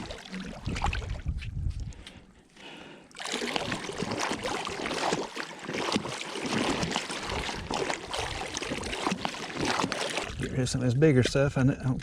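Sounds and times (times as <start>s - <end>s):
water splashing: 0.0s - 1.5s, 2.9s - 11.0s.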